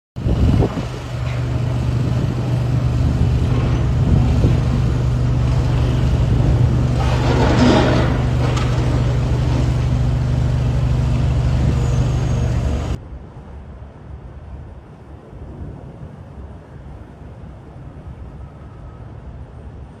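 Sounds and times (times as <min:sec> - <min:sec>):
diesel engine running: 0:00.2 - 0:13.0
rough burst of engine noise: 0:00.2 - 0:13.0.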